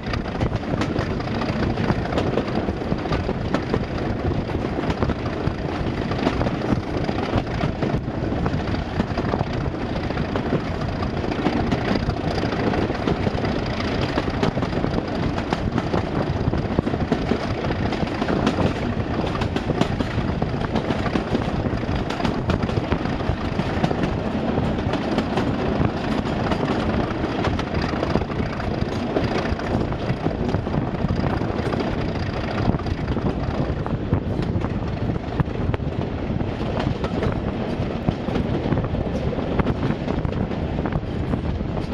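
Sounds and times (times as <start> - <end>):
diesel locomotives working hard: 0.0 - 41.9.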